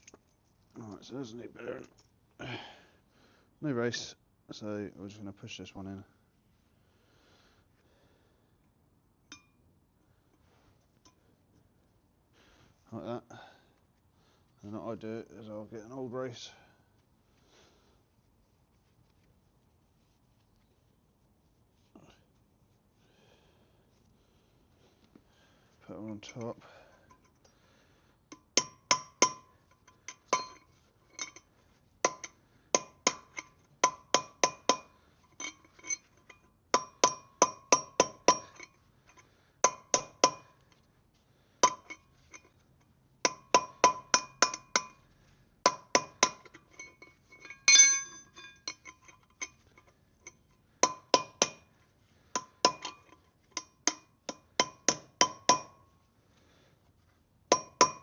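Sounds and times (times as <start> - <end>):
hammer striking metal: 30.3 - 30.6, 36.8 - 38.6, 39.6 - 40.5, 43.3 - 45.0, 47.5 - 48.7, 53.6 - 55.8, 57.5 - 58.0.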